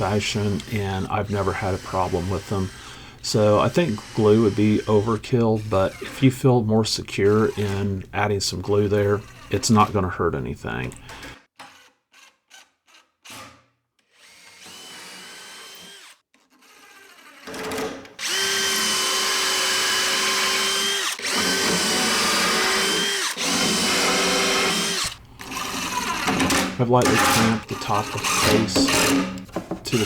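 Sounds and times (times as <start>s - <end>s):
power drill driving screws: 0.0s - 6.3s, 9.2s - 9.6s, 14.0s - 30.0s.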